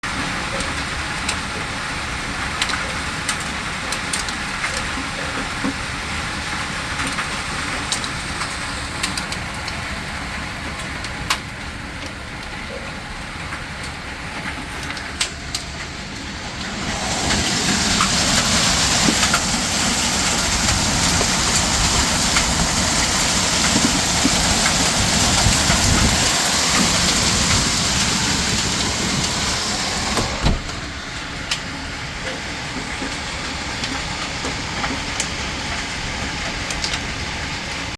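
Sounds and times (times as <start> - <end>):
sharp hail impacts: 13.8 - 37.2
hailstones falling: 13.8 - 37.8
steady hiss: 15.2 - 31.8.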